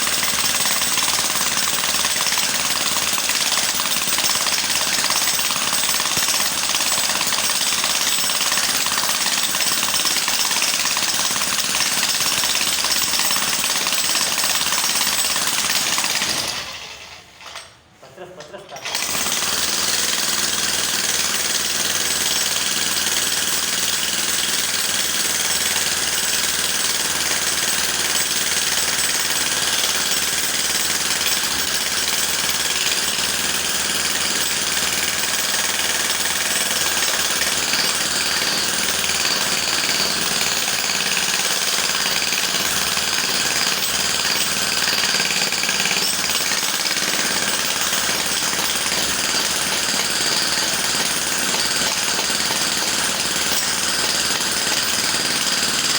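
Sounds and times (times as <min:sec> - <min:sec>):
electric jackhammer hammering: 0:00.0 - 0:17.7, 0:18.7 - 0:55.9.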